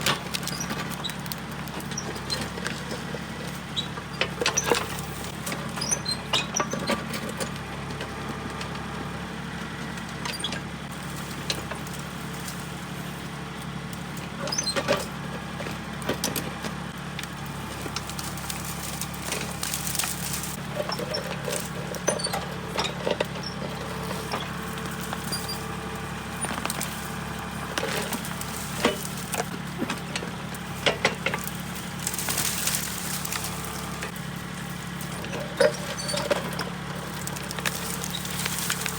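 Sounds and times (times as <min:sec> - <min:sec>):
tractor diesel engine running: 0:00.0 - 0:38.9
bucket scraping rocky soil: 0:17.6 - 0:38.9.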